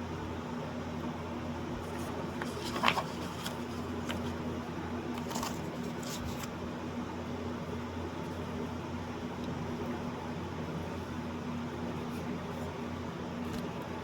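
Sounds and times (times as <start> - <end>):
steady low hum: 0.0 - 14.0
rustles and clicks: 1.8 - 4.4.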